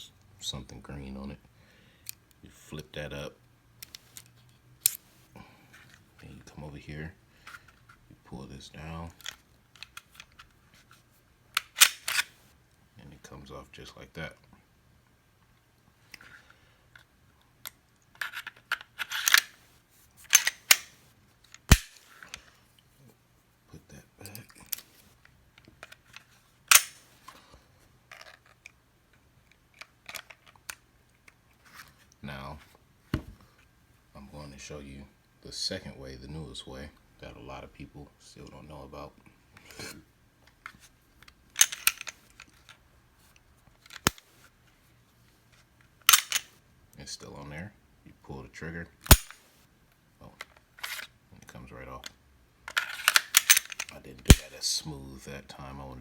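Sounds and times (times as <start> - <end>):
pistol parts scraping and clicking: 3.8 - 6.0, 9.1 - 12.5, 17.0 - 22.6, 24.2 - 27.4, 28.1 - 28.8, 29.5 - 31.9, 40.5 - 44.5, 45.5 - 46.6, 49.0 - 49.6, 50.4 - 51.2, 52.0 - 54.6
sharp metal click: 11.6 - 12.3, 19.1 - 19.6, 20.3 - 21.0, 21.7 - 22.0, 26.7 - 27.1, 41.6 - 42.1, 46.1 - 46.5, 49.1 - 49.4, 52.8 - 54.5.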